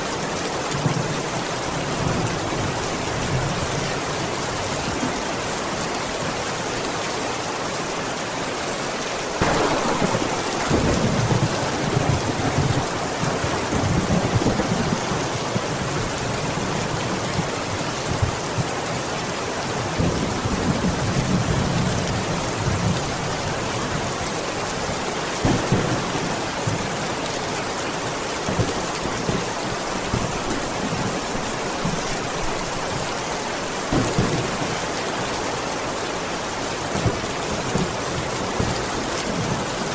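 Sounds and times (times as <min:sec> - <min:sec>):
heavy rain hissing: 0:01.4 - 0:39.9
thunder: 0:09.4 - 0:15.8, 0:25.4 - 0:27.1, 0:33.9 - 0:34.9.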